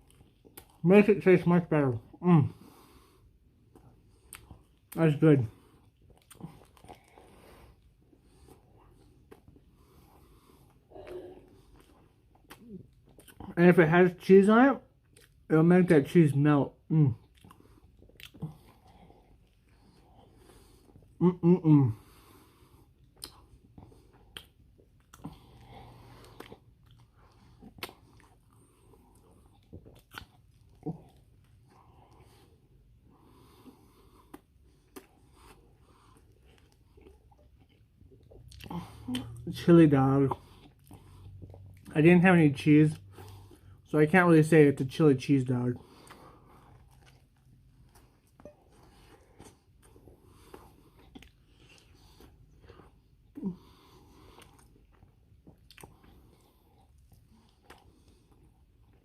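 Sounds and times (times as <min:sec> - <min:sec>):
person chewing: 0:00.0 - 0:00.8, 0:01.9 - 0:13.6, 0:15.0 - 0:15.5, 0:16.9 - 0:42.4, 0:45.5 - 0:59.0
wet mouth clicks and smacks: 0:23.1 - 0:23.5, 0:24.2 - 0:25.4, 0:27.6 - 0:28.3.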